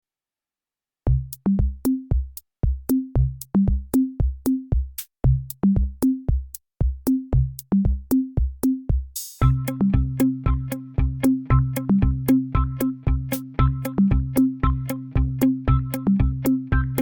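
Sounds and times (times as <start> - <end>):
electronic drum-machine music: 1.1 - 17.0.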